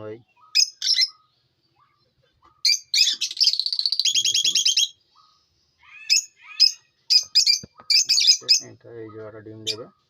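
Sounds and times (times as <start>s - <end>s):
parrots chirping and warbling: 0.2s - 10.0s.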